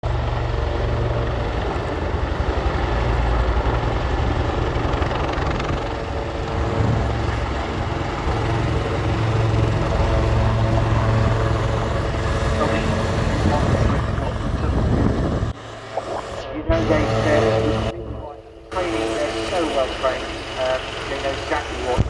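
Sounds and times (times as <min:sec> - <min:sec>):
helicopter rotor chop: 0:00.0 - 0:22.0.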